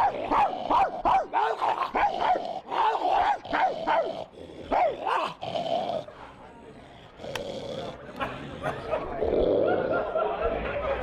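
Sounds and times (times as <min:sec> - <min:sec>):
man imitating dog barks: 0:00.0 - 0:05.4.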